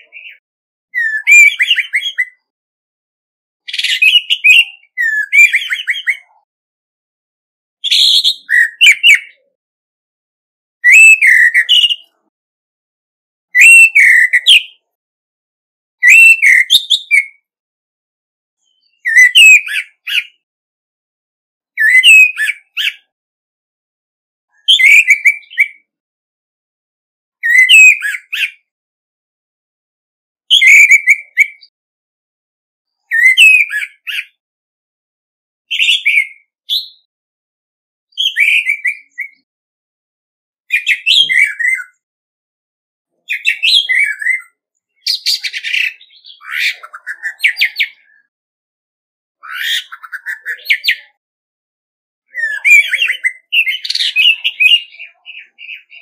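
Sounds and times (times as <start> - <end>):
thrush singing whistled phrases: 1.0 - 2.5, 3.7 - 6.4, 7.8 - 9.5, 10.8 - 12.3, 13.5 - 14.9, 16.0 - 17.5, 18.6 - 20.4, 21.8 - 23.1, 24.5 - 25.9, 27.4 - 28.7, 30.5 - 31.7, 33.0 - 34.4, 35.7 - 37.1, 38.1 - 39.5, 40.7 - 42.0, 43.1 - 48.3, 49.4 - 51.2, 52.3 - 56.0.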